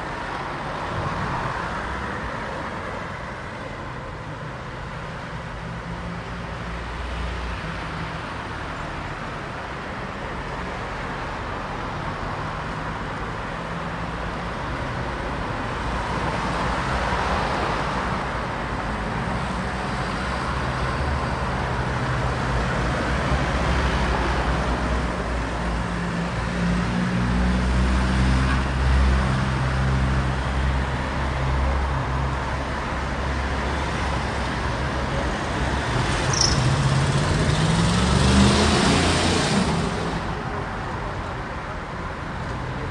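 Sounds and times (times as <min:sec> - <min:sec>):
cars passing: 0:00.0 - 0:42.9.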